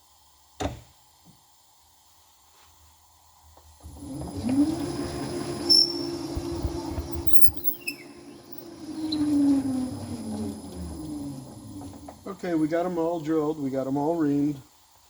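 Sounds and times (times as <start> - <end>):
machine tool motor humming: 3.8 - 12.7
cutter rattling: 4.3 - 7.8
high squeal: 5.4 - 10.1.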